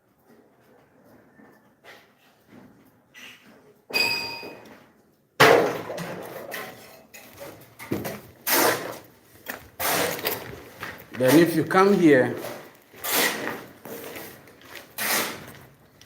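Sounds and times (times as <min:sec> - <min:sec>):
knocks and scrapes: 0:05.4 - 0:16.0.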